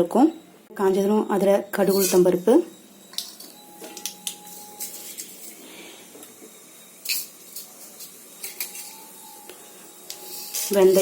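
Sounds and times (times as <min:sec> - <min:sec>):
seeds sizzling in hot oil: 0:04.2 - 0:11.0.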